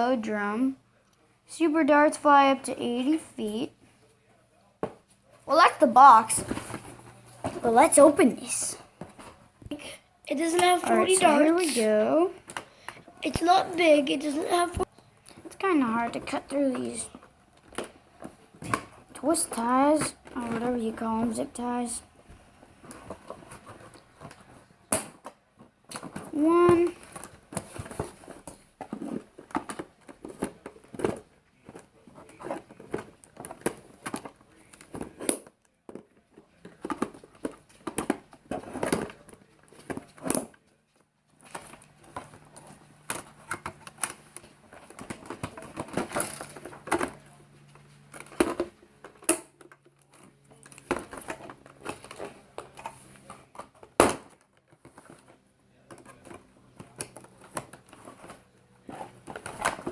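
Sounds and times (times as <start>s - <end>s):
packaging rustling and clicking: 22.8s - 59.9s.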